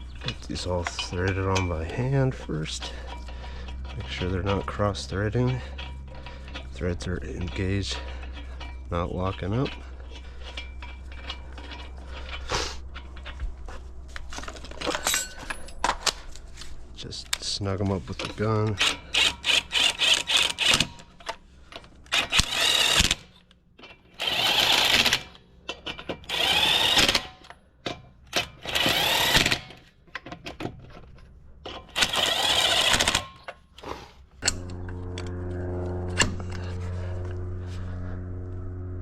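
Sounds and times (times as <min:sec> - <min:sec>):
steady motor hum: 0:00.0 - 0:23.4, 0:34.2 - 0:39.0
impact wrench bursts: 0:18.8 - 0:21.1, 0:22.1 - 0:23.4, 0:24.2 - 0:25.4, 0:26.2 - 0:27.5, 0:28.4 - 0:29.9, 0:31.9 - 0:33.5.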